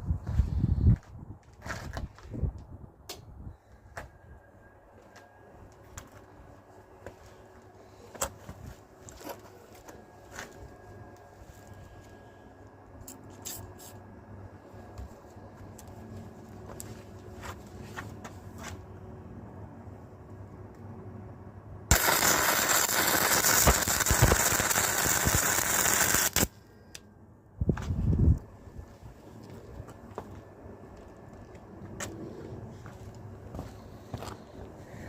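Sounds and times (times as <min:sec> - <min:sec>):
welder arc crackling: 0:21.9 - 0:26.5.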